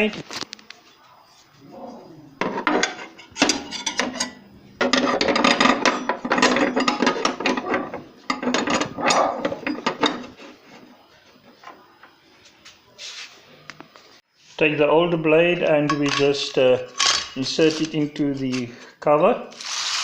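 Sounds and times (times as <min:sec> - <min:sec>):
metal spanner clicking and rattling: 0:15.9 - 0:18.0.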